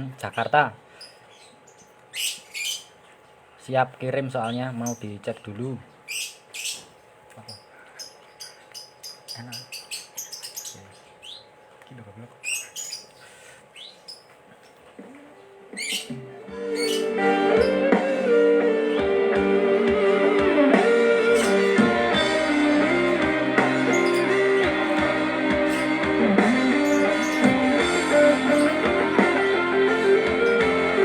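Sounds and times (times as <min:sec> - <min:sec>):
guitar music with drums: 0:15.8 - 0:31.0.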